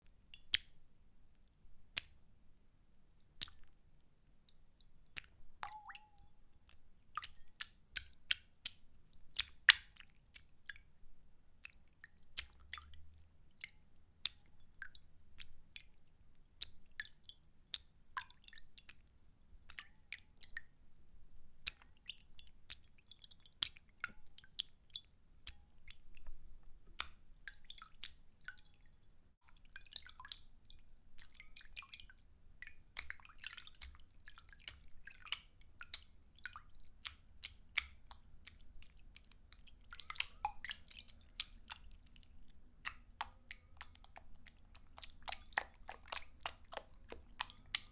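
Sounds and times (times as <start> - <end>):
water splashing and dripping: 4.9 - 10.9, 11.6 - 15.9, 27.0 - 47.9.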